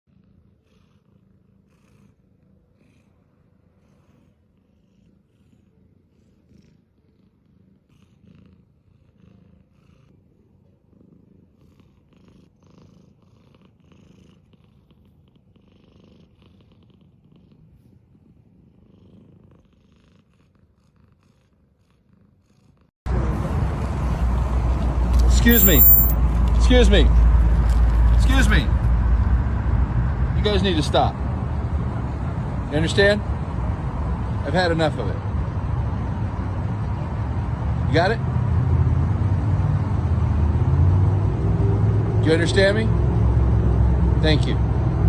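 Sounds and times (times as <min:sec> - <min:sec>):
cat purring: 0:00.1 - 0:22.9.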